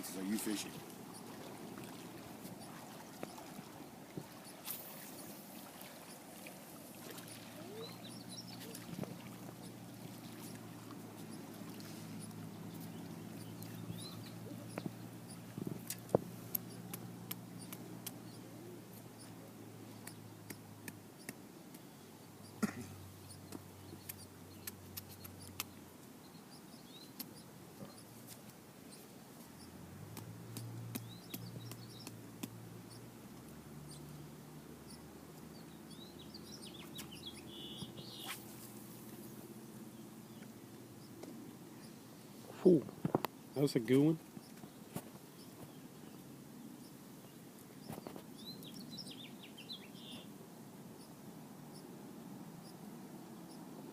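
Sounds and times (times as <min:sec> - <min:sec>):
faint bird chirps: 0:07.0 - 0:10.7, 0:11.3 - 0:15.4, 0:34.8 - 0:38.5, 0:46.8 - 0:50.3.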